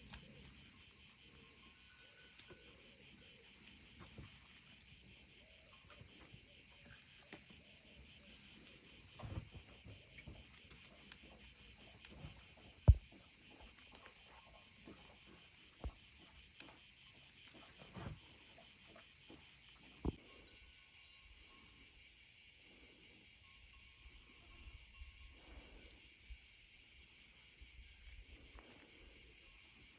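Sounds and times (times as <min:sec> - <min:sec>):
crickets chirping: 0:00.0 - 0:29.9.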